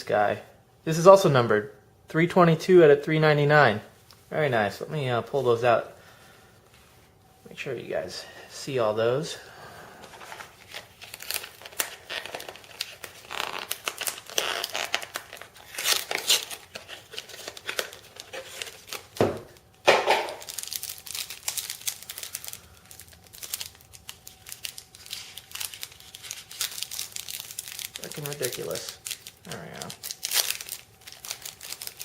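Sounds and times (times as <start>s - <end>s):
wrapper crinkling: 10.1s - 32.0s
wrapper ripping: 10.4s - 32.0s.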